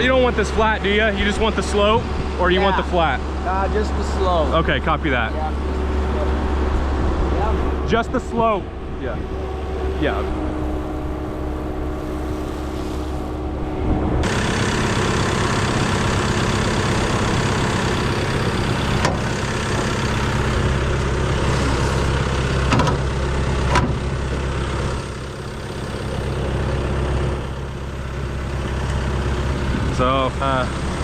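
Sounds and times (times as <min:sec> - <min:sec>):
truck engine humming: 0:00.0 - 0:31.0
loud rushing hiss: 0:10.0 - 0:13.6.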